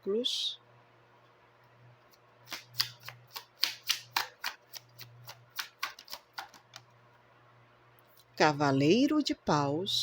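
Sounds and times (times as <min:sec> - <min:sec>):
cards being shuffled: 0:02.1 - 0:06.9
sharp card flicks and slaps: 0:02.1 - 0:06.9.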